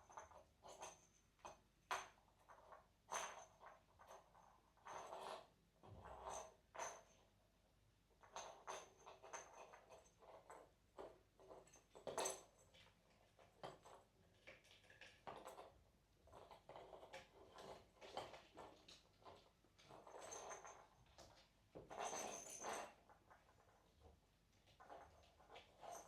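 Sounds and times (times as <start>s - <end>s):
kittens rustling and tapping: 8.4s - 26.0s.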